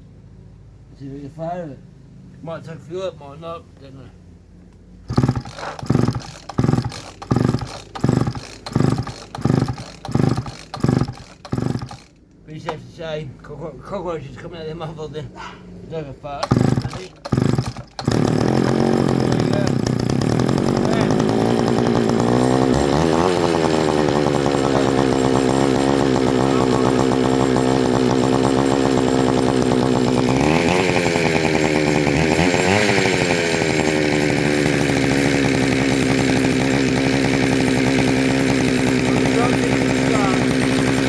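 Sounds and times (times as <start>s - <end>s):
chainsaw engine running: 5.0s - 12.8s, 16.4s - 41.0s.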